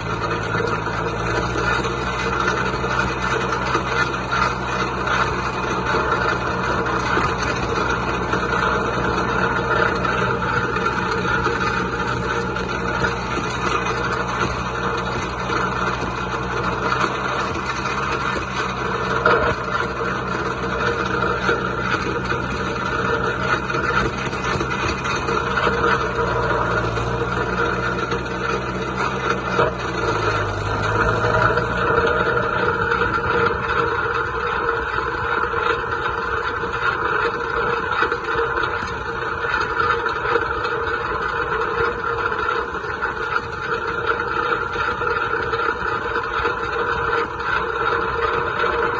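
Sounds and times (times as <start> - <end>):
tractor diesel engine running: 0.0 - 48.9.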